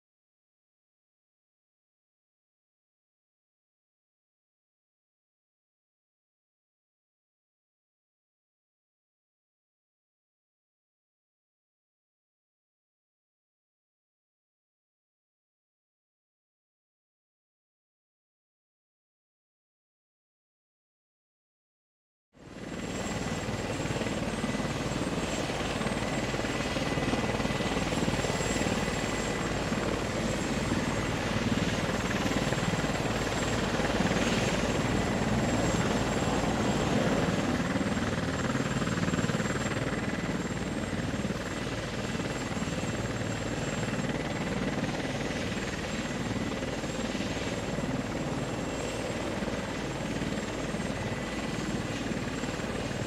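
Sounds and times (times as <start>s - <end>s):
helicopter rotor and engine: 22.4s - 53.0s.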